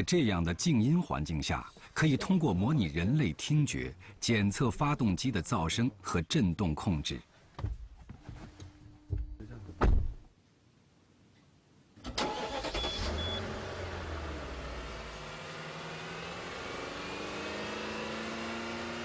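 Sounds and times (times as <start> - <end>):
loud thump: 9.1 - 10.3
car engine starting and idling: 12.0 - 19.0.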